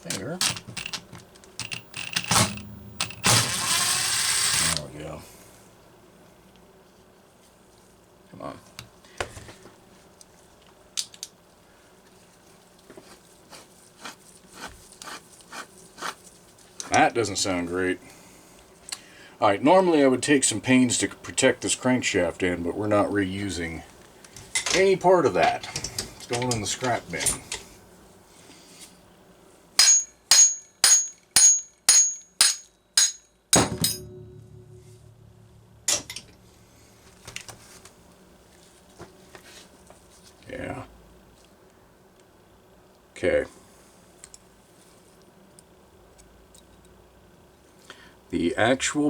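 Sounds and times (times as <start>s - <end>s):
bearing knocking and clicking: 0.1s - 3.3s
hammer striking metal with ringing: 29.8s - 36.2s.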